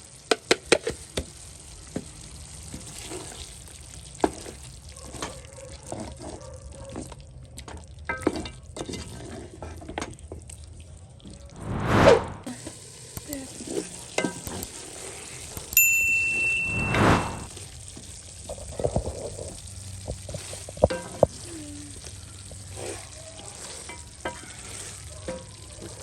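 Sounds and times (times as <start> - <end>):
food sizzling in hot oil: 0.0 - 5.5, 12.4 - 26.0
utensils clicking and knocking: 15.6 - 15.8
brief high tone: 15.8 - 17.5.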